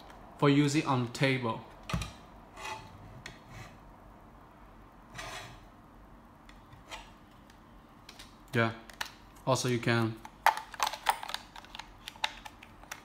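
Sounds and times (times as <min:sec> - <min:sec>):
rubbing scrape: 0:05.1 - 0:05.6.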